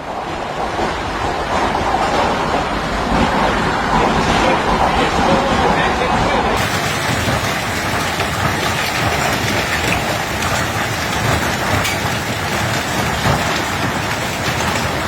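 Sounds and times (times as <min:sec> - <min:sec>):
hail and rain pelting: 0:06.6 - 0:15.0.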